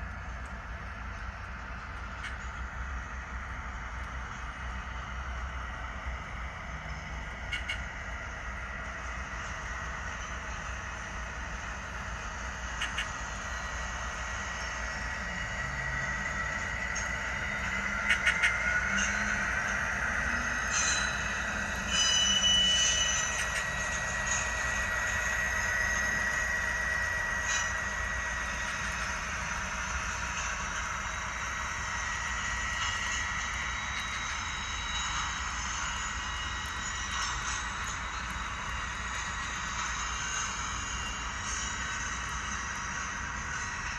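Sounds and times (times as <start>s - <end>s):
railroad cars rolling past: 0.0s - 43.9s
wheel flanges squealing: 12.8s - 43.9s
wheel flange squeal: 14.6s - 29.7s.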